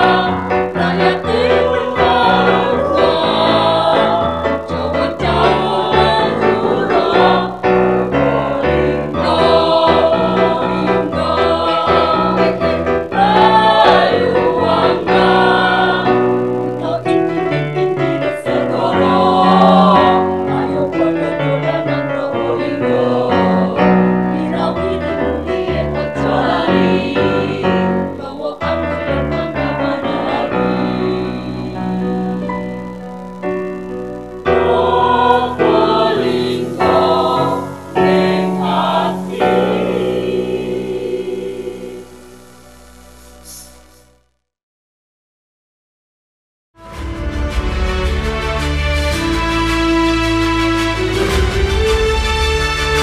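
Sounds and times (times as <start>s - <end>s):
children's choir singing: 0.0s - 32.8s, 34.2s - 42.5s
keyboard accompaniment: 0.0s - 43.9s, 46.8s - 53.0s.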